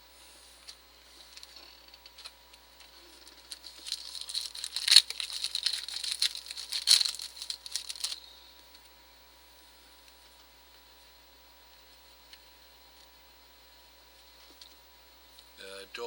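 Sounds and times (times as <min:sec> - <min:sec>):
foil wrapper crinkling and tearing: 0:03.0 - 0:08.3.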